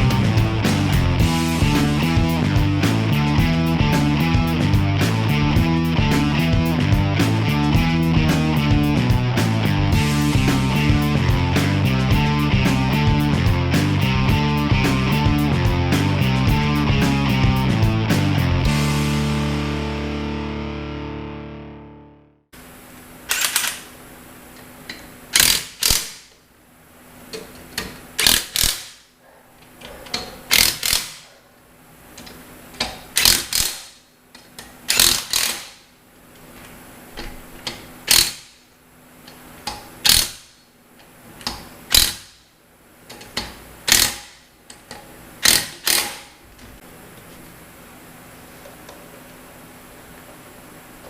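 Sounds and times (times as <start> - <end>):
wrench rattling on lug nuts: 24.9 - 26.3, 27.4 - 29.0, 30.1 - 31.2, 32.8 - 34.0, 34.7 - 35.8, 37.6 - 38.6, 39.6 - 40.6, 41.4 - 42.4, 43.1 - 46.4.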